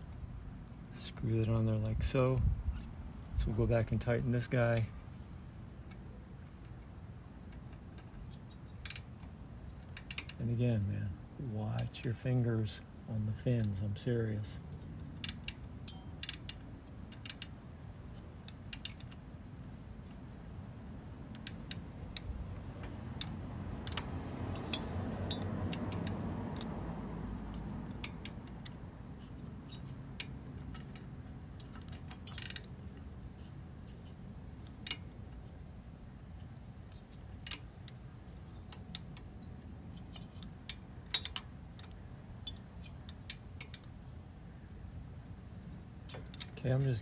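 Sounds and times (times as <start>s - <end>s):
light metallic clicks and taps: 20.8s - 26.8s, 36.4s - 44.0s
sharp metal clink: 41.1s - 41.6s.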